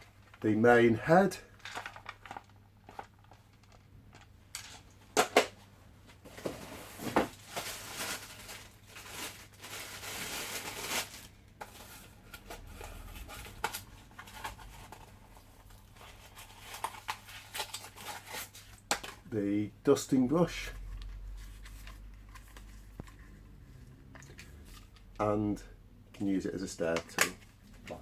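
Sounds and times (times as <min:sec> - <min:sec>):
packaging rustling and crinkling: 0:01.5 - 0:04.8, 0:06.1 - 0:19.3.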